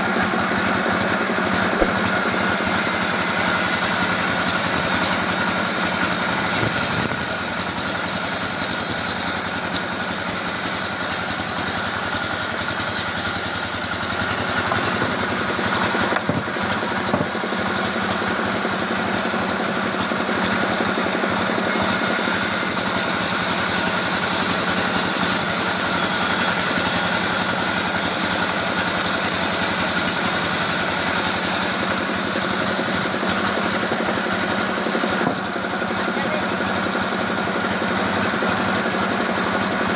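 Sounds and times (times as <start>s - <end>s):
sawmill machine drone: 0.0s - 39.9s
high saw hiss: 1.7s - 16.2s, 21.5s - 35.2s.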